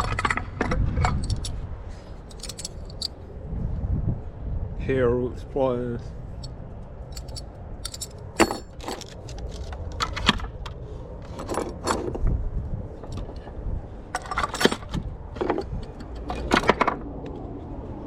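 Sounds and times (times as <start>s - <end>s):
metal tools clinking: 2.2s - 3.2s, 7.1s - 9.7s, 14.1s - 16.8s.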